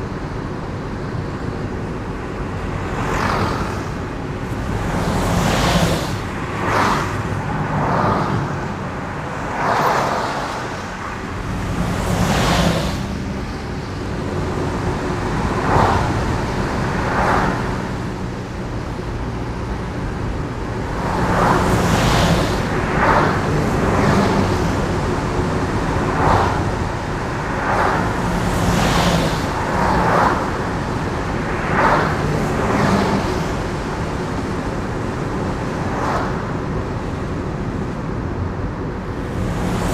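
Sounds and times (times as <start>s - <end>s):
car engine hum: 0.0s - 39.9s.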